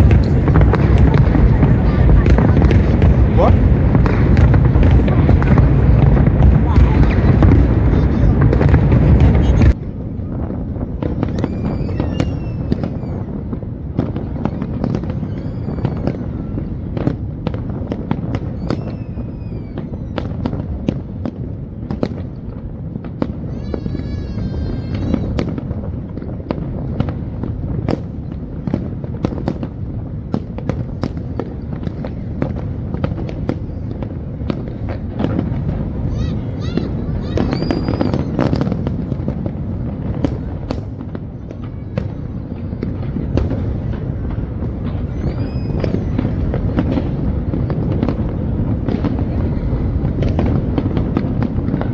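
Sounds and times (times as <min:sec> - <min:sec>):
fireworks bursts and cracks: 0:00.0 - 0:51.9
whistling firework shells: 0:11.1 - 0:13.4, 0:14.4 - 0:16.7, 0:18.3 - 0:20.7, 0:36.8 - 0:39.4, 0:44.8 - 0:47.0.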